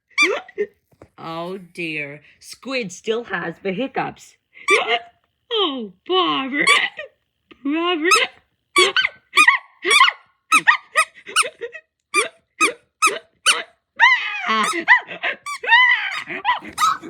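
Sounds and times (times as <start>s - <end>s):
high-pitched toy squeaks: 0.1s - 0.5s, 4.7s - 5.0s, 6.6s - 7.0s, 8.1s - 17.0s
wavering squeal: 15.5s - 17.0s.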